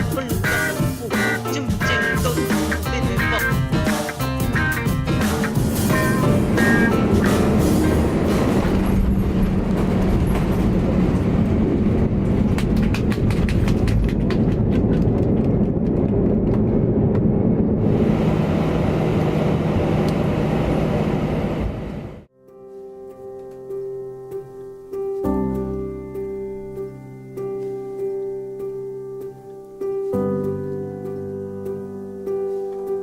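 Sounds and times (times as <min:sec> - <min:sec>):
moving vehicle rumble: 0:05.5 - 0:22.3
low hum: 0:05.7 - 0:22.3.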